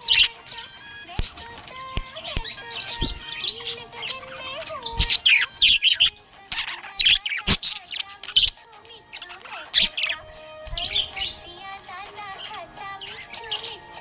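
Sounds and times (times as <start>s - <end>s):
budgerigar chirping and warbling: 0.0s - 14.0s.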